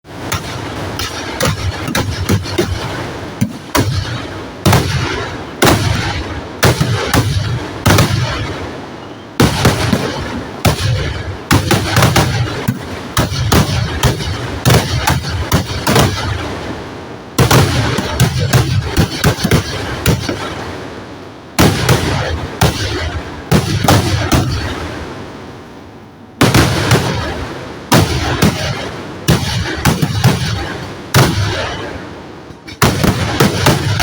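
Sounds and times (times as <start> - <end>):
fireworks bangs: 0.1 - 34.0.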